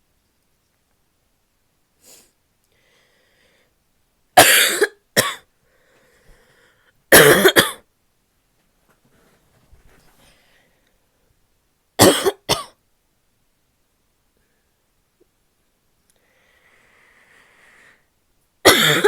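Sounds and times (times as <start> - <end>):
faint breaths: 2.0 - 3.9, 5.5 - 7.1, 9.1 - 11.4, 16.1 - 18.2
woman coughing: 4.4 - 5.4, 7.1 - 7.8, 12.0 - 12.8, 18.6 - 19.0.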